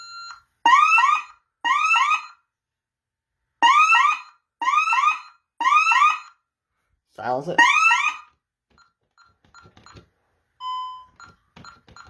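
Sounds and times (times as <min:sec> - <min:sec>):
alarm siren rising chirps: 0:03.6 - 0:06.4.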